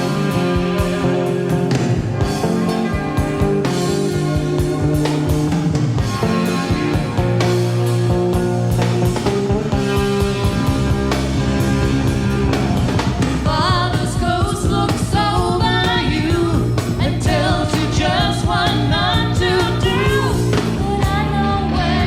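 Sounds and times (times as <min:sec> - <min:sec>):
pop-rock band playing: 0:00.0 - 0:22.0
person singing: 0:13.4 - 0:22.0.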